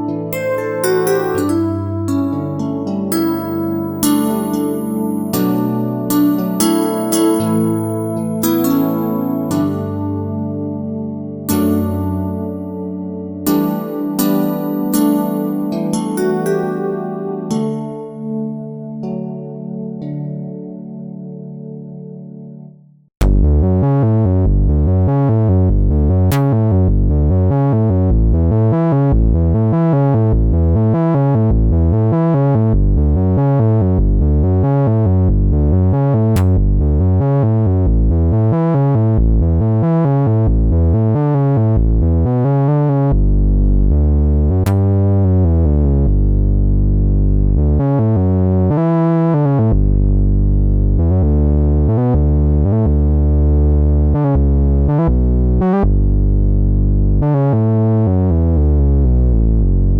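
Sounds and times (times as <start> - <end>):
synthesizer bass line: 0.0 - 19.8
synthesizer notes: 0.0 - 20.1.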